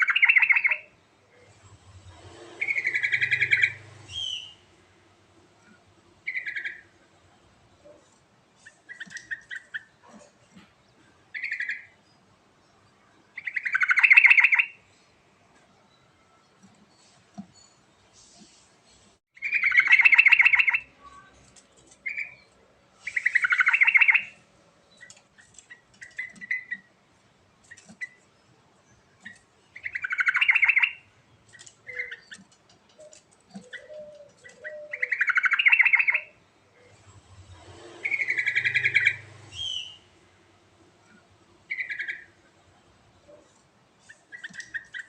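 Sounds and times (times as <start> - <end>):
bird chirps and chips: 0.0 - 0.9, 19.4 - 27.0, 27.6 - 28.3, 29.2 - 36.4, 38.0 - 40.1, 43.4 - 45.0
bulbul singing warbled phrases: 33.6 - 36.4.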